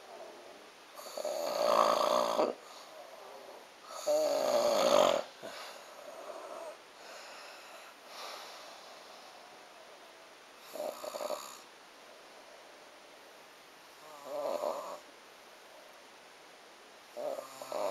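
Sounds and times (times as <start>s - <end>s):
person snoring: 0.0s - 8.4s, 10.6s - 11.6s, 14.0s - 15.0s, 17.2s - 17.9s
soft breathing: 2.6s - 4.2s, 5.2s - 10.8s.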